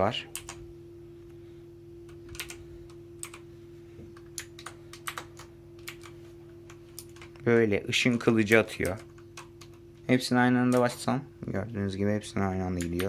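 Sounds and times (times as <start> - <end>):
steady low hum: 0.0 - 13.0
mechanical keyboard clicks: 2.3 - 2.6.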